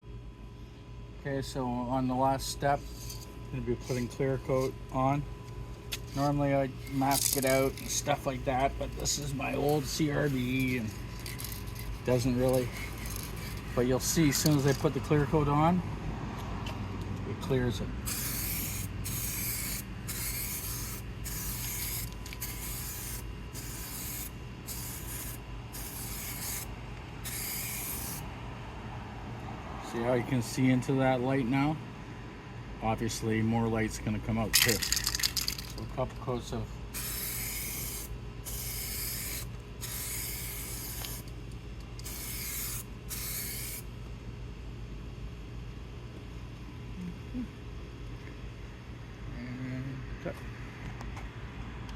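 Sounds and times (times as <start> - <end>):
spray hiss: 18.1 - 28.2, 37.0 - 41.2, 42.1 - 43.8.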